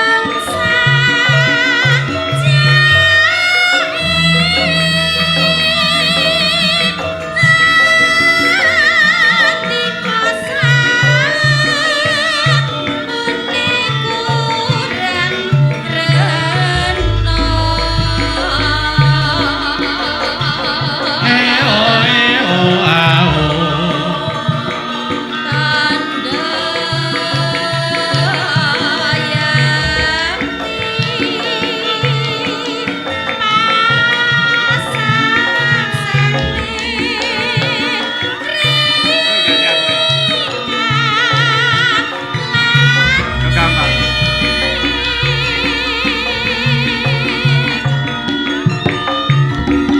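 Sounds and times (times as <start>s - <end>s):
person singing with vibrato: 0.0s - 48.6s
gamelan music: 0.0s - 49.9s
drumming: 14.7s - 25.8s, 28.0s - 32.8s, 41.8s - 49.9s.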